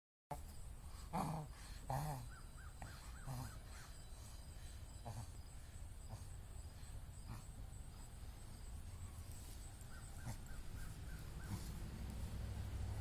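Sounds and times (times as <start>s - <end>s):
dog snorting air through nose: 10.1s - 13.0s.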